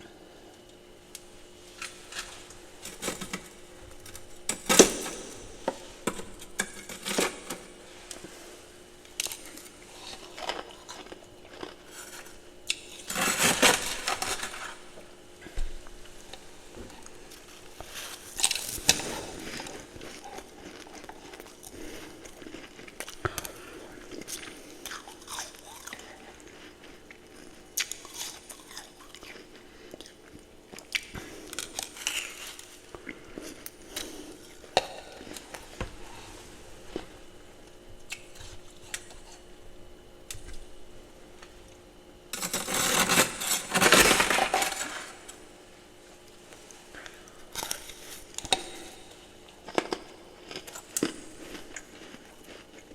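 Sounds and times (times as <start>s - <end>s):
person crunching ice: 9.2s - 15.0s, 42.4s - 45.3s.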